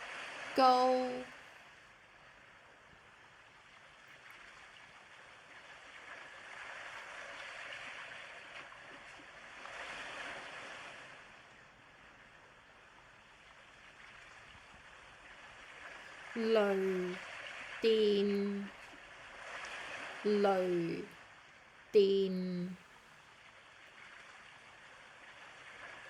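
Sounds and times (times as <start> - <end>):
surf washing onto shore: 5.5 - 11.4, 19.1 - 20.3.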